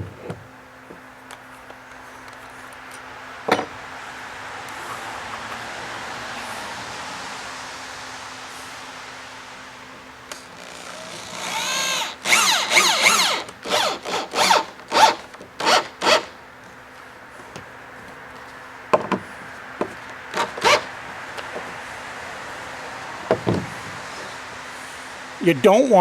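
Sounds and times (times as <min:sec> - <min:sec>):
drill boring into wood: 0:10.5 - 0:16.3, 0:20.3 - 0:20.9
light knocks: 0:18.9 - 0:20.8.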